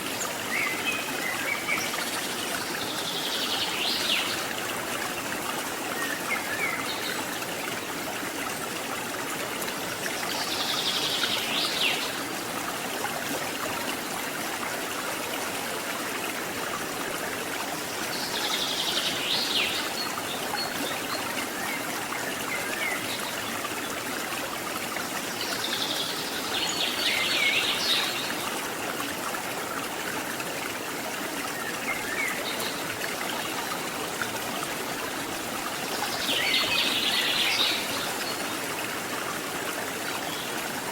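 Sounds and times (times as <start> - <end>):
flowing river water: 0.0 - 40.9.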